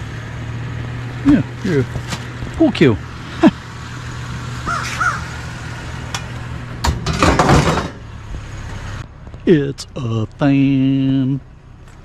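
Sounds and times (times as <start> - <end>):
crow cawing: 4.6 - 5.5.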